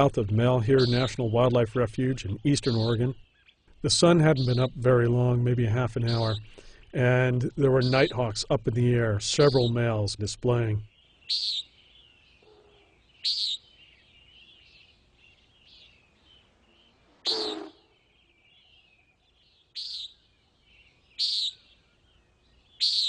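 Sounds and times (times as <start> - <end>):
faint bird twittering: 0.0 - 5.3, 5.9 - 8.4, 9.4 - 9.9, 10.7 - 23.0
nighthawk nasal peent calls: 11.3 - 11.7, 12.4 - 13.6, 17.2 - 17.9, 19.8 - 20.2, 21.2 - 21.6, 22.8 - 23.0.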